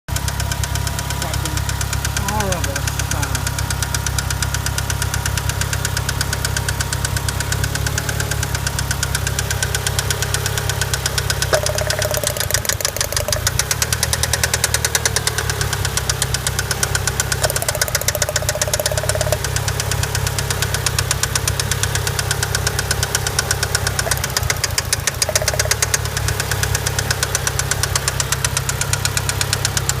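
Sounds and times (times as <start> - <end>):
car engine with rod knock: 11.5 - 19.5, 24.0 - 26.5.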